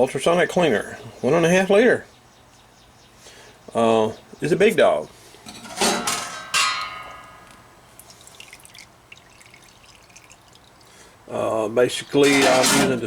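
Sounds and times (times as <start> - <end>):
faint handling noise: 5.4 - 7.7, 12.1 - 13.0.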